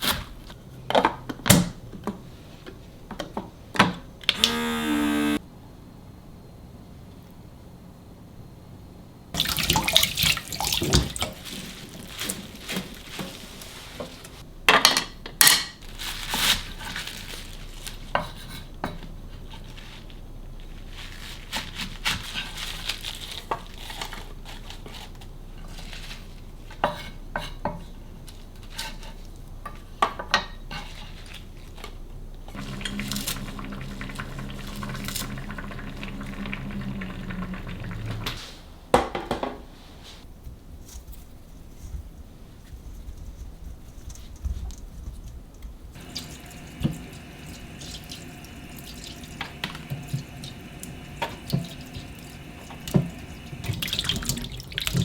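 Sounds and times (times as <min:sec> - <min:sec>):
running water: 0:32.5 - 0:38.4, 0:46.0 - 0:55.0.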